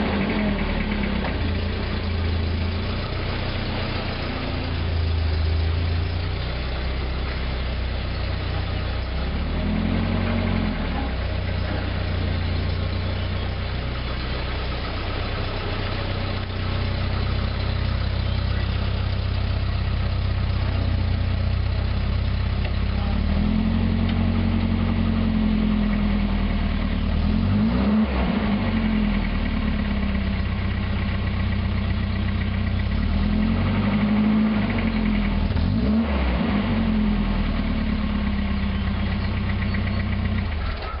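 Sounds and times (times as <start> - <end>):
car engine idling and revving: 0.0 - 41.0.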